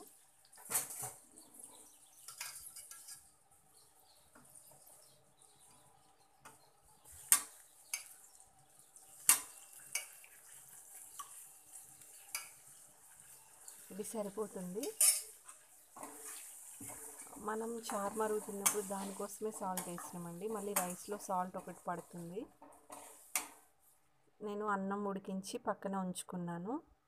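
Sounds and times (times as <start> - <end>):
metal ladle clinking and scraping pan: 2.3 - 3.2, 9.2 - 13.3, 14.8 - 17.4, 22.9 - 23.6.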